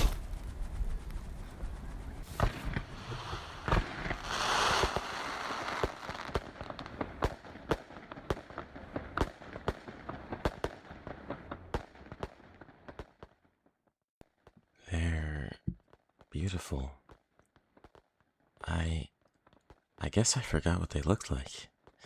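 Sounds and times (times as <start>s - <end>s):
fireworks crackling: 0.0s - 13.0s
fireworks bangs: 2.1s - 13.3s
fireworks hissing burst: 2.2s - 6.0s.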